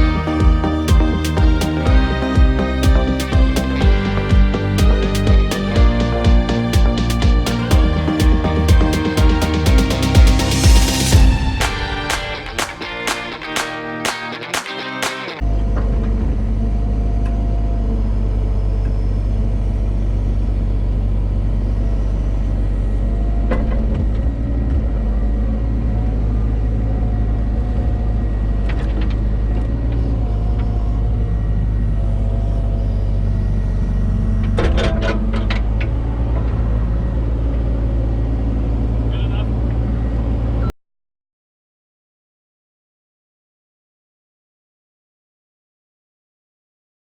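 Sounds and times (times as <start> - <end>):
diesel engine rumbling: 0.0 - 12.6.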